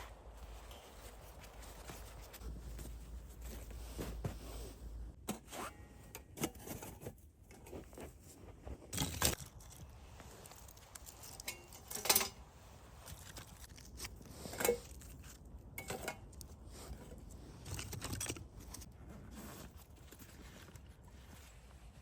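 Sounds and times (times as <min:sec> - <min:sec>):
quiet rustling: 0:00.0 - 0:05.2, 0:16.4 - 0:22.0.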